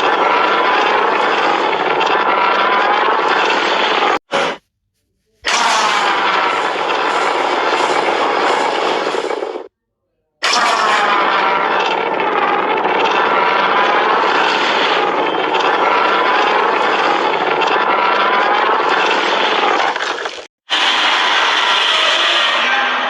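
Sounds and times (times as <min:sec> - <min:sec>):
monster roar: 0:05.4 - 0:09.6, 0:10.4 - 0:20.0, 0:20.7 - 0:23.0.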